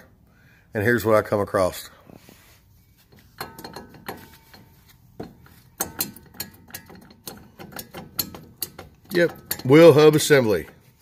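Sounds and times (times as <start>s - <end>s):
metallic clicks and clinks: 3.1s - 10.8s.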